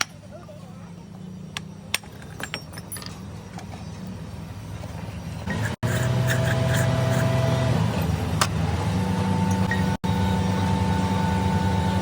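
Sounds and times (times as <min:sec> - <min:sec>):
machine humming and whining: 0:03.3 - 0:12.0.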